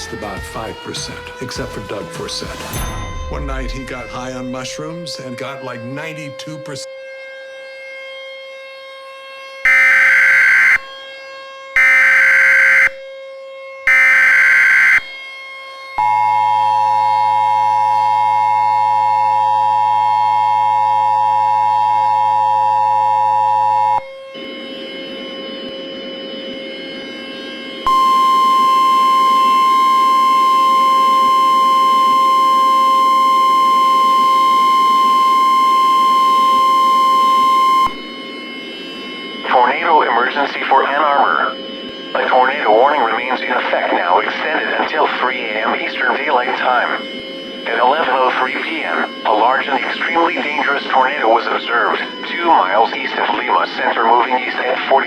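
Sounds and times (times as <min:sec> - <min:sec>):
steady warning alarm tone: 0:00.0 - 0:55.0
two-tone attention signal: 0:09.7 - 0:10.8, 0:11.8 - 0:13.0, 0:13.9 - 0:15.1, 0:27.8 - 0:38.2.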